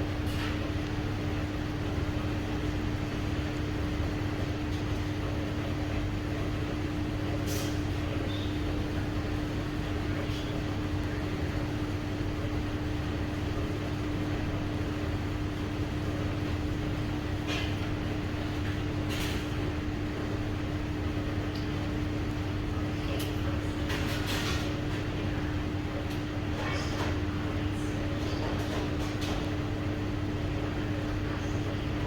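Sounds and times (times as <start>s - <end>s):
mechanical hum: 0.0s - 32.0s.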